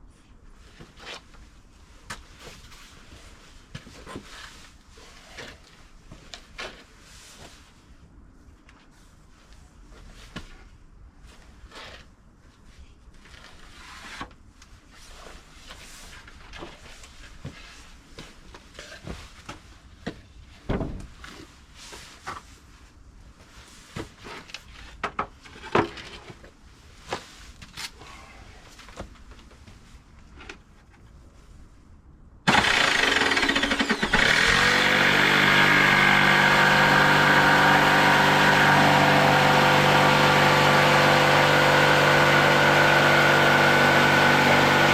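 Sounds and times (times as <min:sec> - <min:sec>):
motor running: 0:32.5 - 0:44.9.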